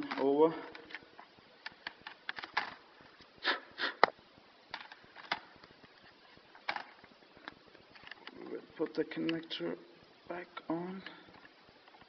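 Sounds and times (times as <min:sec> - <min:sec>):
short hissing sounds: 0:03.3 - 0:04.2.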